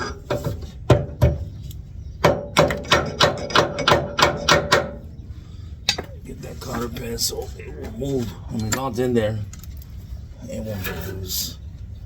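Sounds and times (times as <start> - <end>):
hammer tapping on metal: 2.2 - 5.0.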